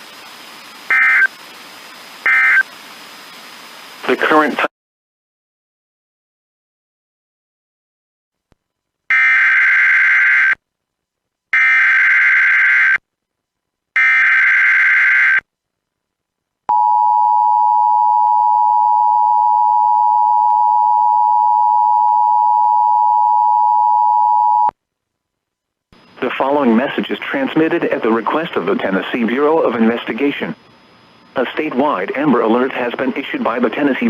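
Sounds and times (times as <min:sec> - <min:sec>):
screeching digital data bursts: 0:00.9 - 0:01.4, 0:02.2 - 0:02.7.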